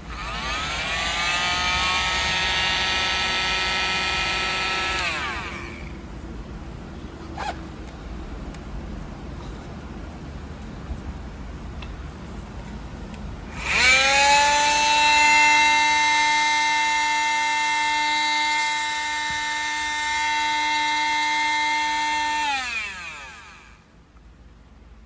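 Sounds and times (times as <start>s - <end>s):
oscillating multi-tool buzzing whine: 0.0s - 6.0s, 13.5s - 24.0s.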